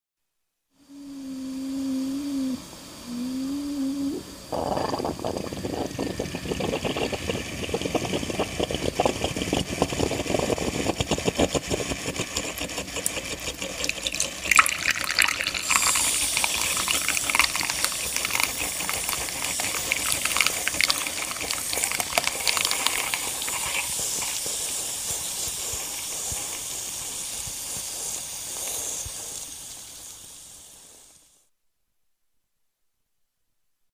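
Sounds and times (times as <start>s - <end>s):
coffee machine gurgling and hissing: 0.9s - 31.4s.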